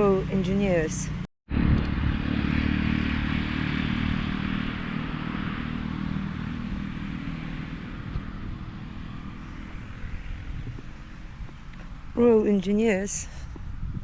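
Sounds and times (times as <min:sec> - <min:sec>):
vehicle engine running: 0:00.0 - 0:13.6
road noise: 0:00.0 - 0:14.0.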